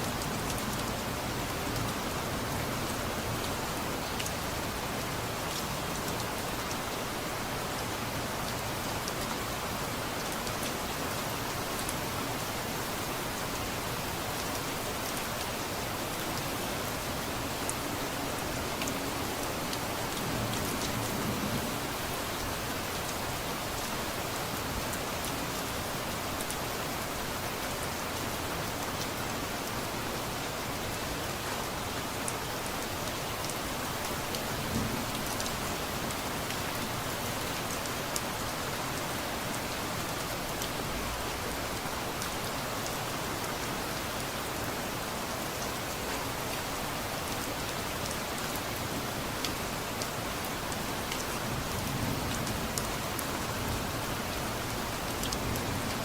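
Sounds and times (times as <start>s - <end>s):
steady rain pattering: 0.0s - 56.0s.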